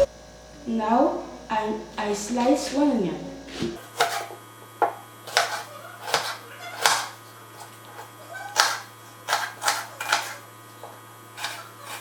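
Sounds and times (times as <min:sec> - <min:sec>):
knife chopping onion on board: 0:03.5 - 0:07.2, 0:08.5 - 0:10.4, 0:11.4 - 0:12.0.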